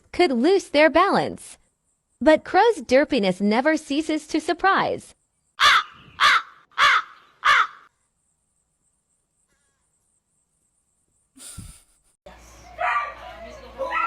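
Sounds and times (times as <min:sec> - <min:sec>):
crow cawing: 0:05.6 - 0:07.9.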